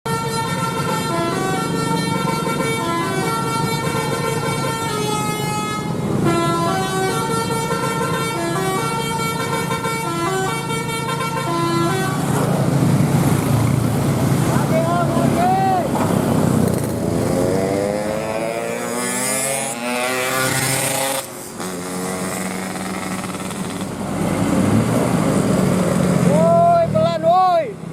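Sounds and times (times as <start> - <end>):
multi-tone bus horn playing tune: 0.1 - 12.7
bus engine running: 0.1 - 17.6
road noise: 0.1 - 27.9.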